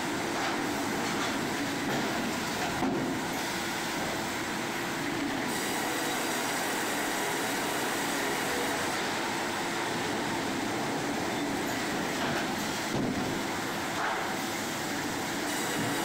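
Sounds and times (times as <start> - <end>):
sawmill machinery clattering: 0.0 - 4.9, 10.5 - 16.0.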